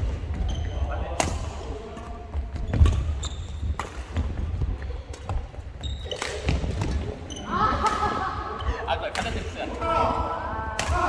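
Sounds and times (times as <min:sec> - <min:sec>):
footfalls on court floor: 0:00.0 - 0:07.8
shoe squeaks: 0:00.4 - 0:01.1, 0:02.6 - 0:03.9, 0:05.7 - 0:07.6
racket hitting shuttlecock: 0:03.8 - 0:04.3, 0:10.8 - 0:11.0.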